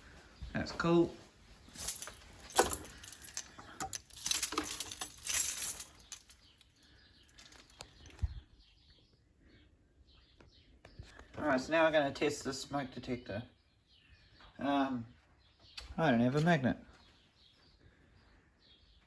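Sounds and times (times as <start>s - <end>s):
rustling bursts: 1.7s - 6.4s
sharp clicks and rattles: 1.7s - 6.7s.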